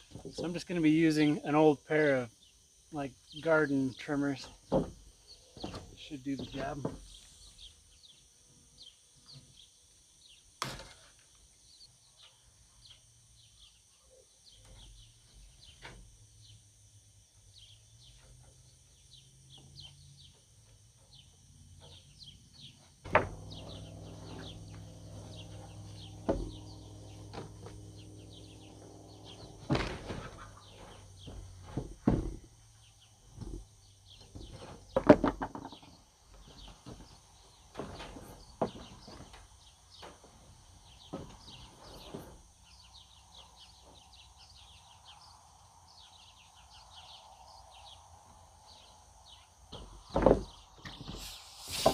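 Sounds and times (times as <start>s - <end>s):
birds chirping: 0.0s - 10.5s, 21.0s - 40.2s, 40.8s - 51.9s
machine hum: 14.8s - 51.0s
knocks: 26.2s - 27.8s, 29.3s - 32.5s.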